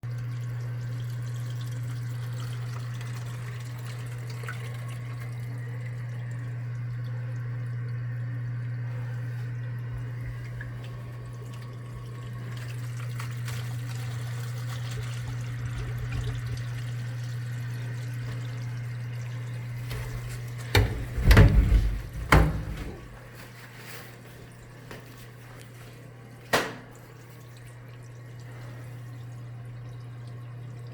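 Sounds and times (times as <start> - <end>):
water trickling and dripping: 0.1 - 21.1, 26.9 - 30.9
steady low hum: 2.7 - 30.9
sudden knocks: 20.7 - 23.2.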